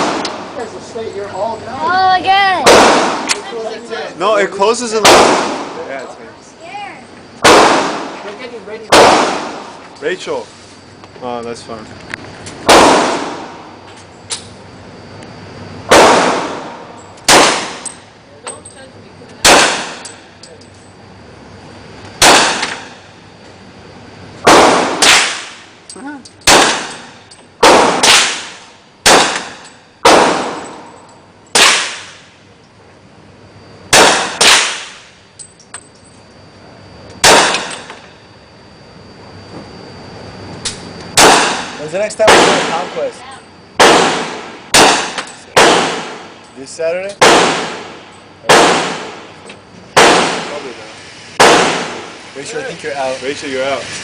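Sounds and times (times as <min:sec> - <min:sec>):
gunshots with ringing echo: 0:00.0 - 0:00.6, 0:02.6 - 0:03.3, 0:05.0 - 0:05.9, 0:07.4 - 0:08.2, 0:08.9 - 0:09.7, 0:12.6 - 0:13.7, 0:15.9 - 0:18.0, 0:19.4 - 0:20.2, 0:22.2 - 0:23.0, 0:24.4 - 0:25.6, 0:26.4 - 0:32.3, 0:33.9 - 0:35.1, 0:37.2 - 0:37.9, 0:41.2 - 0:43.1, 0:43.8 - 0:46.4, 0:47.2 - 0:49.3, 0:50.0 - 0:50.7, 0:51.4 - 0:52.2.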